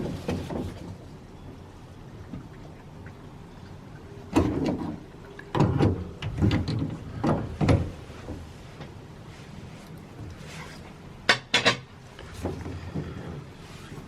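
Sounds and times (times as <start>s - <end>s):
water valves clunking: 0.0s - 9.0s.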